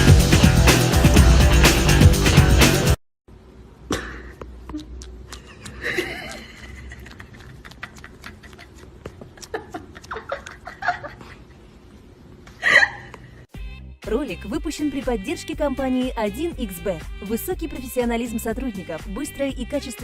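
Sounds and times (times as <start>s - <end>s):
loud music: 0.0s - 3.0s.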